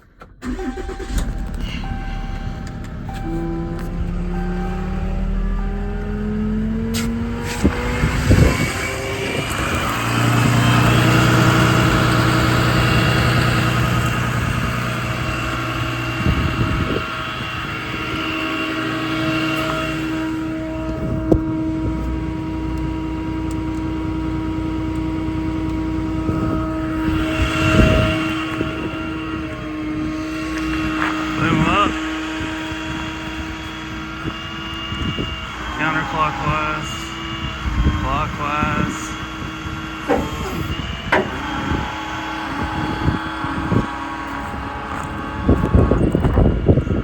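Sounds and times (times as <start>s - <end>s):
diesel truck engine whining: 0.0s - 47.0s
sharp knocks: 40.1s - 41.5s.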